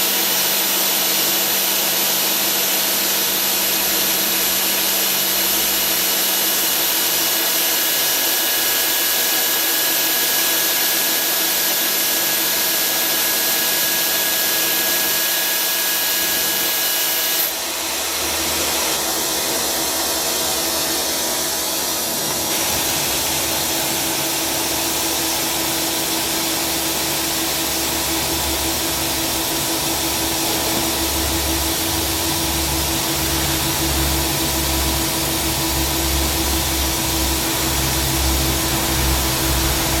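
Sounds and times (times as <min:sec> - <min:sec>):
lathe machine whining: 0:00.0 - 0:40.0.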